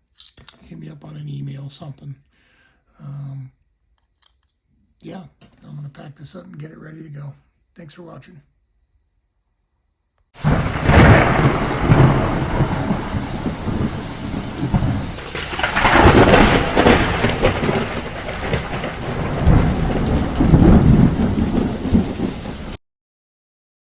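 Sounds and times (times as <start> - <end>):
rain falling steadily: 10.4 - 22.8
rolling thunder: 10.4 - 22.8.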